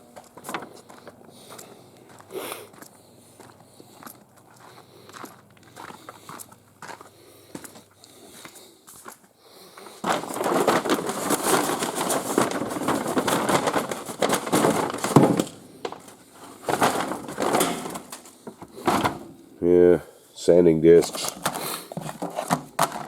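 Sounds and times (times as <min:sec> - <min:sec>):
bag rustling and crinkling: 0:09.8 - 0:19.4.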